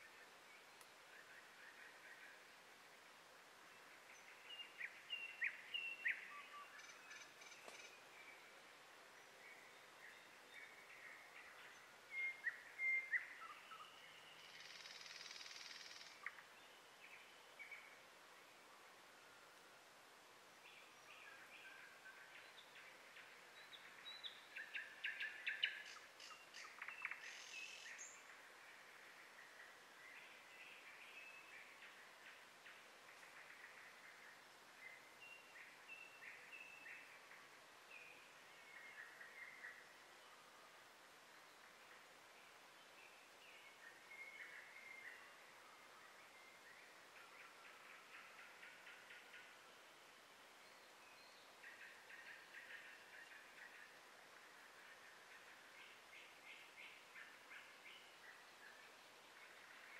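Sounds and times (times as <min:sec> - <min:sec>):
small birds chirping: 0:03.6 - 0:18.7, 0:20.5 - 0:40.5.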